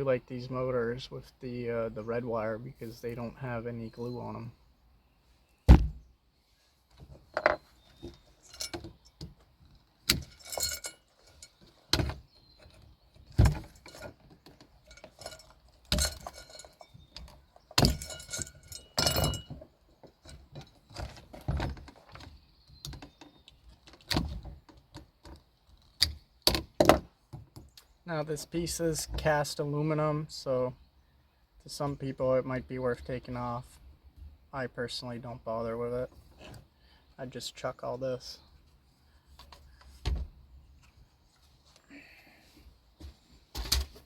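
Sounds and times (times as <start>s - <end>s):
metal parts knocking and clinking: 7.3s - 7.7s, 8.3s - 9.2s, 10.1s - 12.1s, 13.4s - 22.0s.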